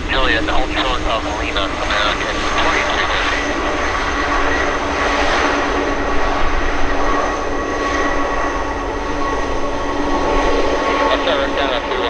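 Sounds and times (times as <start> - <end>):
jet engines roaring and whining: 0.0 - 12.0.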